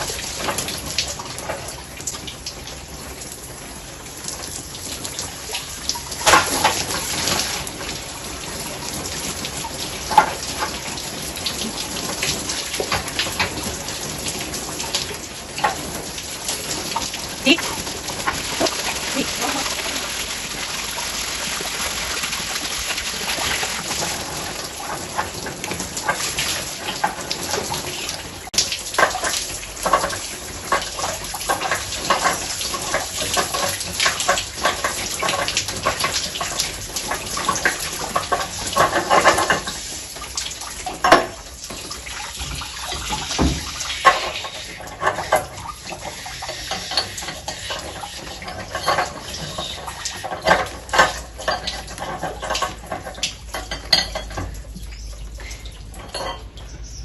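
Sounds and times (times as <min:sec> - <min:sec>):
water running and splashing: 0:00.0 - 0:57.0
metallic tool clinks and knocks: 0:56.0 - 0:56.6.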